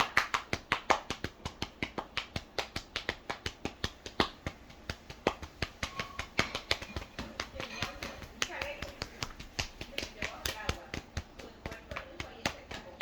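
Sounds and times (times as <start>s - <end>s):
hands slapping legs: 0.0s - 13.0s.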